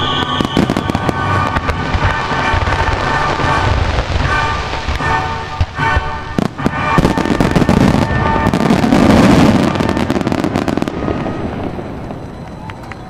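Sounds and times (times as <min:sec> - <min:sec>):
fireworks bursting and crackling: 0:00.0 - 0:13.0.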